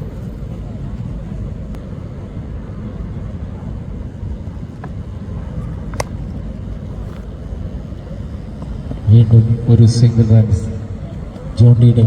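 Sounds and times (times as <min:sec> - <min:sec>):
wind rumble on microphone: 0:00.0 - 0:12.0.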